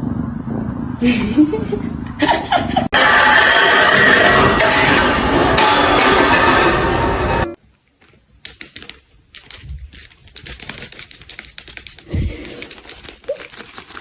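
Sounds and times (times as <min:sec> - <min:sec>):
music: 0:03.0 - 0:07.6.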